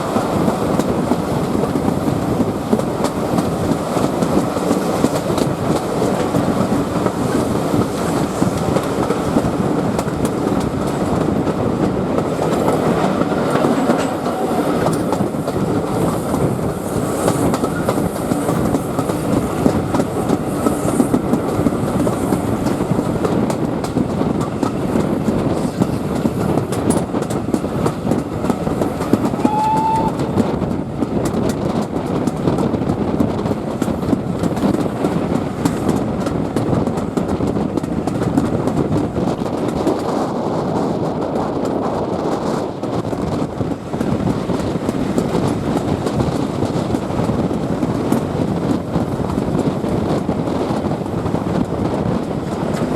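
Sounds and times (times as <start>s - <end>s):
train rumble: 0.0s - 52.9s
wheels clicking over rail joints: 0.0s - 52.9s
brief high tone: 29.4s - 30.2s.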